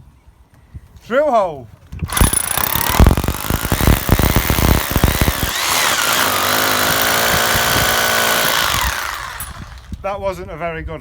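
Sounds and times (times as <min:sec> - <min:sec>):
electric drill boring into wall: 0:02.1 - 0:10.0.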